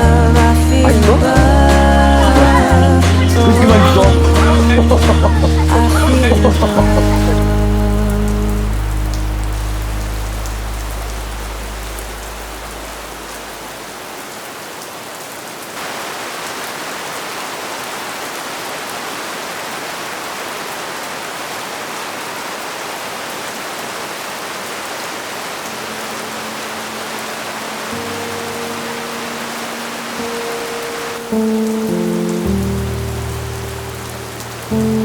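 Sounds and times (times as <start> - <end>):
background music: 0.0 - 13.3, 27.2 - 35.0
steady rain falling: 0.0 - 35.0.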